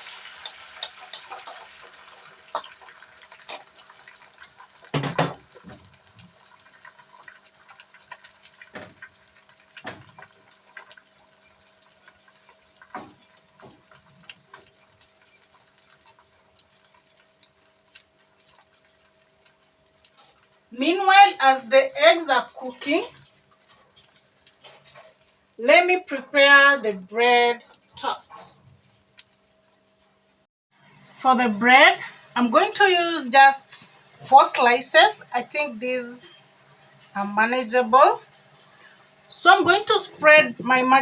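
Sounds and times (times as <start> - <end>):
egg hissing in a frying pan: 0.0 - 21.6, 22.9 - 25.6, 27.7 - 31.0
faint ticks and crackles: 0.4 - 20.7, 22.8 - 25.6, 27.6 - 30.4.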